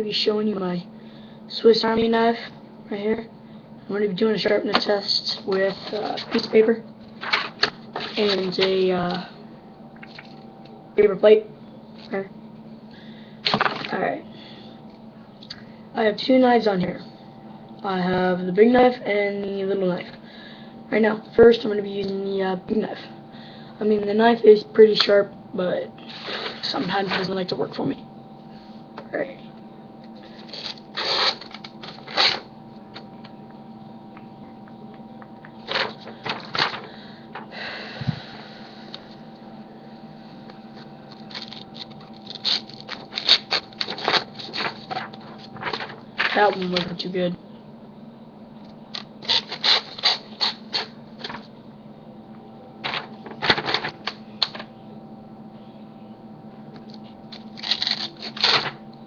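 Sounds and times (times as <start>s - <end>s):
paper rustling: 4.7s - 9.2s, 10.0s - 10.5s, 26.1s - 27.5s, 30.2s - 32.5s, 35.6s - 37.5s, 41.1s - 47.0s, 49.0s - 51.5s, 52.8s - 54.7s, 57.4s - 58.8s
knife cutting paper: 30.3s - 32.4s, 41.1s - 46.6s, 49.0s - 51.4s, 57.4s - 58.8s.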